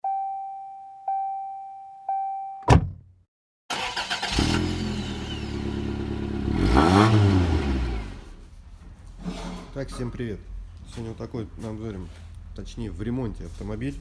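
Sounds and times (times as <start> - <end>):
diesel engine idling and revving: 3.8 - 8.3.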